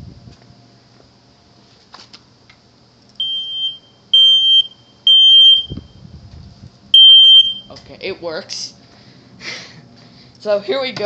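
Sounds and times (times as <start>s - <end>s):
smoke alarm high-pitched beeps: 3.2s - 6.0s, 6.9s - 7.8s.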